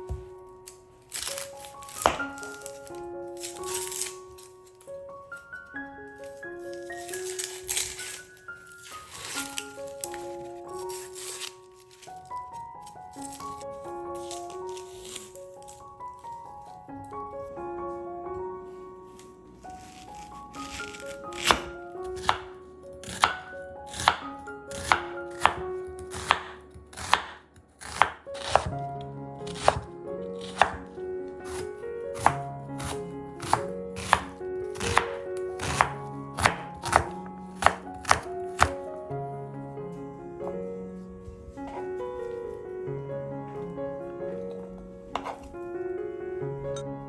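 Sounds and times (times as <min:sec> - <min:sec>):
soft piano music: 0:00.0 - 0:47.0
knife chopping on cutting board: 0:01.1 - 0:02.6, 0:20.6 - 0:28.8, 0:29.5 - 0:38.8, 0:45.2 - 0:45.5.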